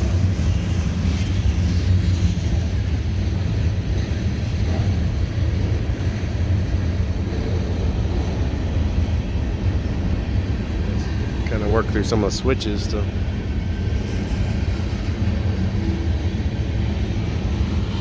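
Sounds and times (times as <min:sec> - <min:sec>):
train wheels rumbling on rails: 0:00.0 - 0:18.0.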